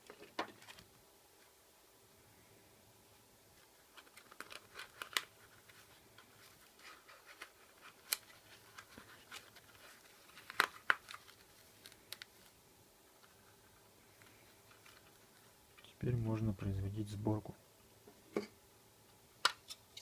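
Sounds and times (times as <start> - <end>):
tape crinkling and scratching: 0.0 - 0.9, 3.6 - 15.9.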